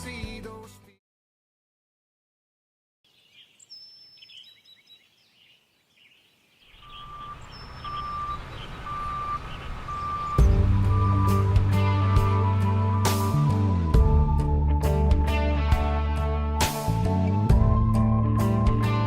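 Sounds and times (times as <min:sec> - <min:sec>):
music: 0:00.0 - 0:01.0, 0:10.4 - 0:19.0
birds chirping: 0:03.1 - 0:13.5
reversing beeper: 0:06.9 - 0:14.4.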